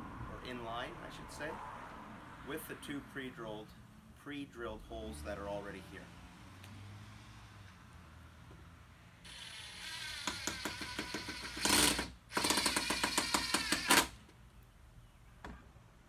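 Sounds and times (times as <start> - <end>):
power driver driving screw: 9.3 - 14.2.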